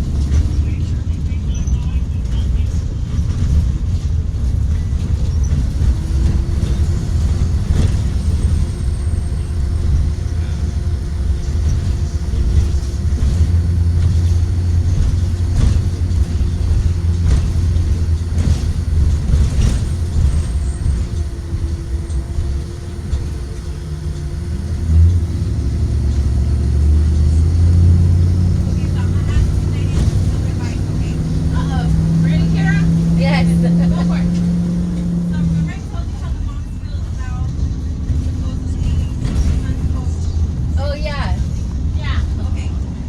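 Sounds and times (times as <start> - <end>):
bus engine rumbling with whine: 0.0 - 43.0.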